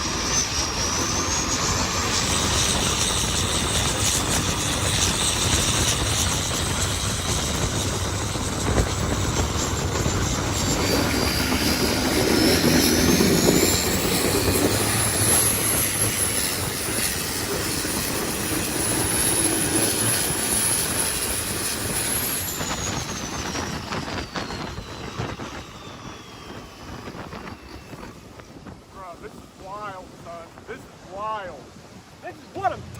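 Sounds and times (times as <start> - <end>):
boat diesel engine at full throttle: 0.0 - 25.1.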